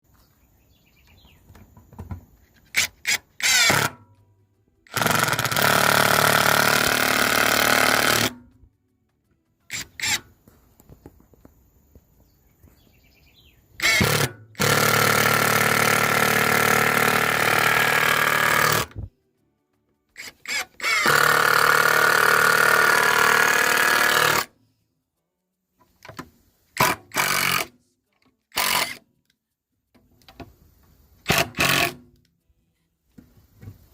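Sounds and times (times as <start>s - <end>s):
power tool running on wood: 4.9s - 8.4s, 13.8s - 18.9s, 20.5s - 24.5s.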